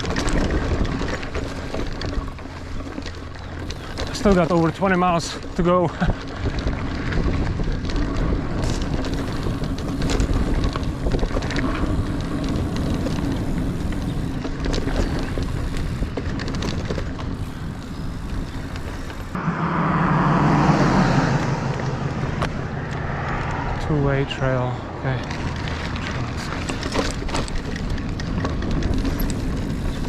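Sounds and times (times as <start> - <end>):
bike clicks and knocks: 0.0 - 19.4, 21.7 - 23.8, 24.5 - 30.0
bike tyres rolling on trail: 0.0 - 30.0
wind on microphone: 6.0 - 23.9.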